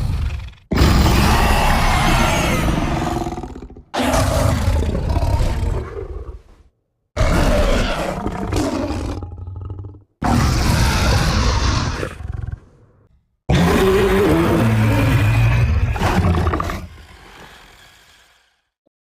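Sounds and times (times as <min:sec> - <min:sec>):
creature roaring: 0:00.0 - 0:06.5, 0:07.2 - 0:12.8, 0:13.5 - 0:18.6.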